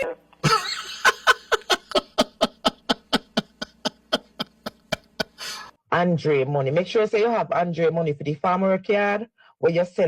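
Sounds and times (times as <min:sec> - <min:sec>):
person laughing in pulses: 0:00.4 - 0:05.7.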